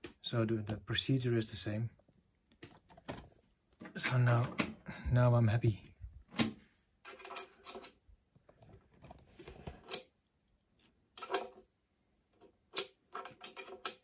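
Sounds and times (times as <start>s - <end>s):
handling clicks and knocks: 2.5s - 4.8s, 12.3s - 14.0s.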